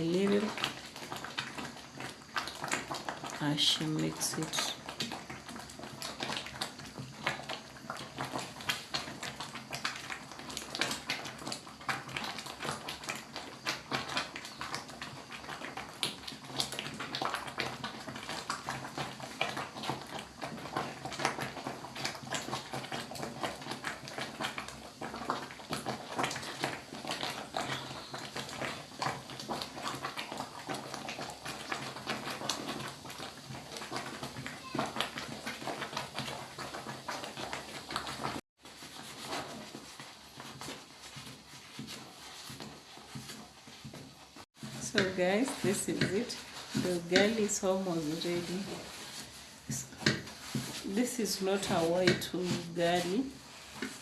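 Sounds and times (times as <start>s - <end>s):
wooden stick scraping a pot: 25.1s - 54.0s.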